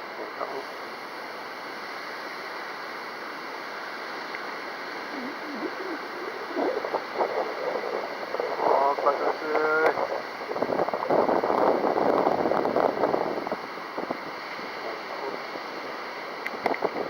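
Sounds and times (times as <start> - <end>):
faint murmuring voice: 5.1 - 10.6
wind on microphone: 5.1 - 17.0.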